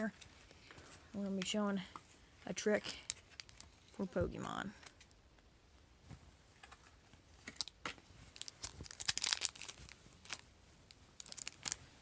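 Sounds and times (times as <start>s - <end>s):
plastic packaging crackling: 2.9s - 3.8s, 7.4s - 12.0s.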